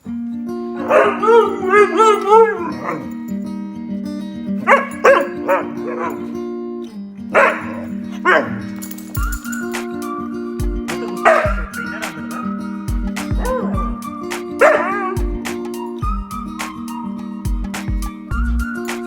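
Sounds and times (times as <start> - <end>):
dog barking: 0.8 - 3.1, 4.6 - 6.3, 7.4 - 8.8, 10.9 - 12.6, 13.4 - 13.9, 14.6 - 15.2
dog howling: 0.8 - 3.2, 4.7 - 6.3, 7.4 - 15.4
background music: 0.8 - 3.3, 4.6 - 6.3, 7.4 - 19.0.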